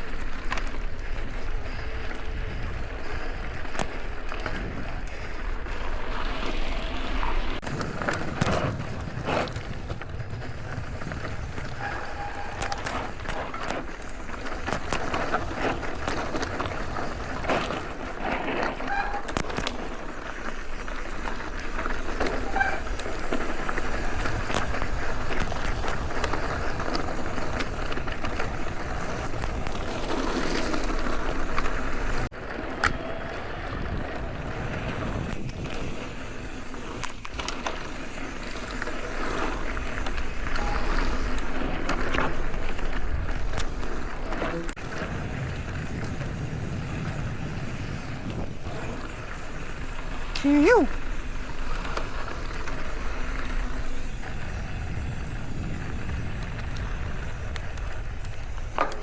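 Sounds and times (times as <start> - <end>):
bike rattling over ground: 0.0 - 59.0
bike tyres on dirt trail: 0.0 - 59.0
high squeaks: 11.8 - 13.7, 18.7 - 19.4, 22.3 - 23.3, 40.4 - 41.5
wind on microphone: 22.4 - 37.4, 42.4 - 58.8.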